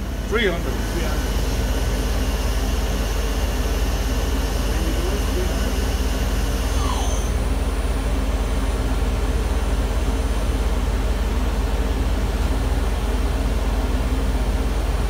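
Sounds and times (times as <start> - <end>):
thin high whine: 0.0 - 8.5
milling machine running: 0.0 - 15.0.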